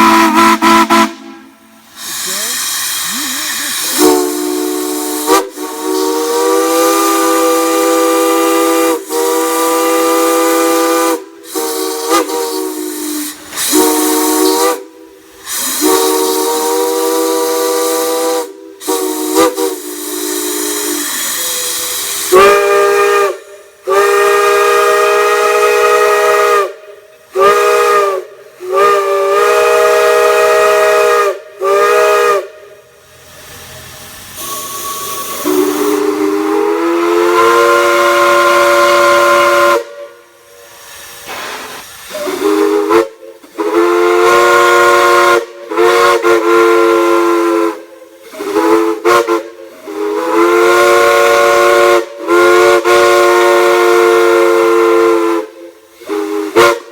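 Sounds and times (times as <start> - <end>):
steam hiss: 0.0 - 56.9
large whistle blasts: 2.3 - 14.9, 34.4 - 40.3, 48.6 - 56.9.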